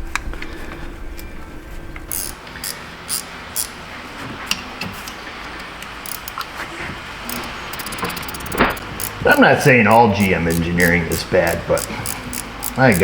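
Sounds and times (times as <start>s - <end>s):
hand tools clinking on metal: 7.3s - 13.0s.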